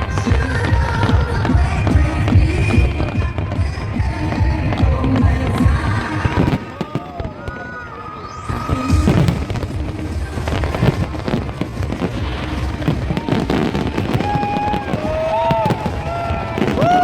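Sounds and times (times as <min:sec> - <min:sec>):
fireworks bangs and crackles: 0:00.0 - 0:17.0
music: 0:00.0 - 0:17.0.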